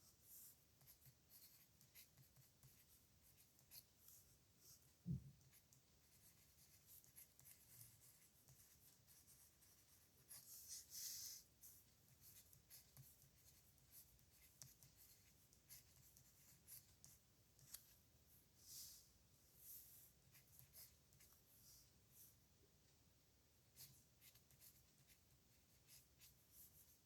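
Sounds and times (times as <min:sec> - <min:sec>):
pen scratching on paper: 0:00.4 - 0:04.2, 0:05.5 - 0:18.0, 0:19.6 - 0:21.4, 0:23.8 - 0:27.0.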